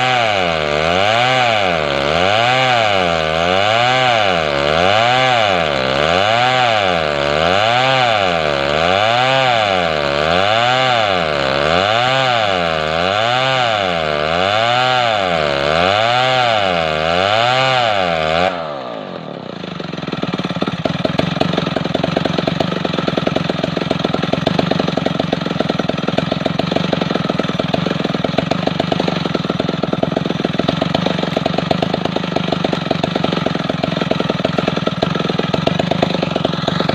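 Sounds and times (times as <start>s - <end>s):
chainsaw running steady: 0.0s - 36.9s
chainsaw sawing log: 0.0s - 36.9s.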